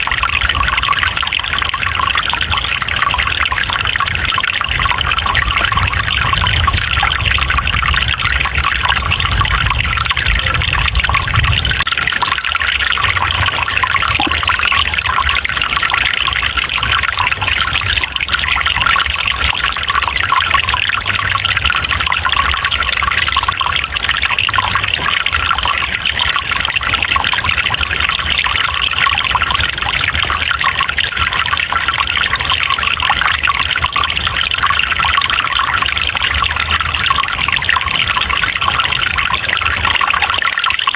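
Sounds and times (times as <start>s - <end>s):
stream water trickling: 0.0s - 40.9s
low rumble: 4.1s - 11.9s.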